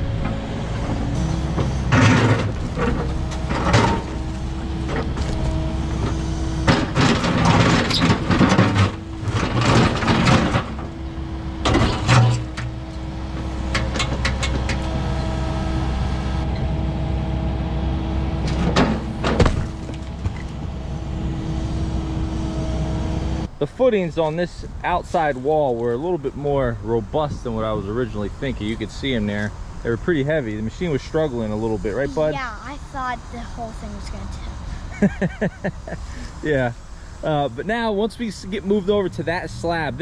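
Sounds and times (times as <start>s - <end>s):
excavator diesel engine running: 0.0s - 23.6s.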